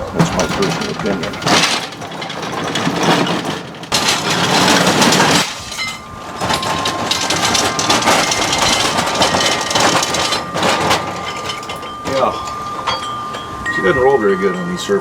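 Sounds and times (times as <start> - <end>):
metal cart rattling over rough ground: 0.0 - 15.0.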